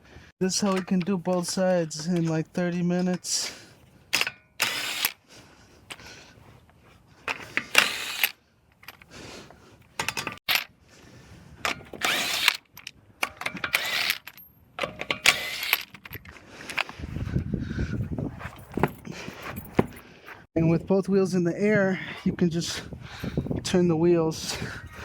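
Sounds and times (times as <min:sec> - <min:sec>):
power tool running: 0:04.6 - 0:05.2, 0:07.7 - 0:08.3, 0:12.0 - 0:12.6, 0:13.7 - 0:14.2, 0:15.2 - 0:15.8.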